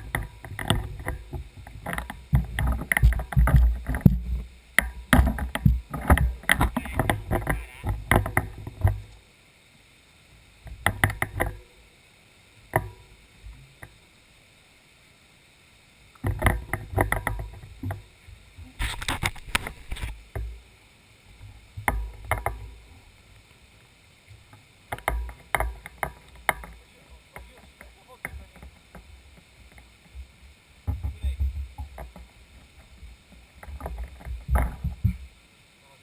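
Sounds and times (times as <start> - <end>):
knocking and rattling: 0.0 - 9.0.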